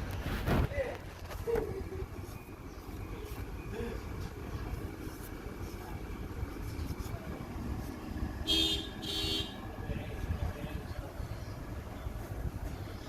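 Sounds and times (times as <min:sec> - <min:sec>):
low engine rumble: 0:00.0 - 0:13.0
vehicle horn toots: 0:08.4 - 0:09.6.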